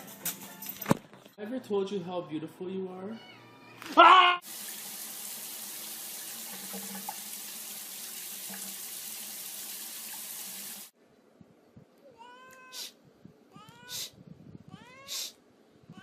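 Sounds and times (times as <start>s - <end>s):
cat meowing: 3.1s - 4.4s, 12.0s - 14.1s, 14.7s - 15.3s
water running from a tap: 4.4s - 10.9s.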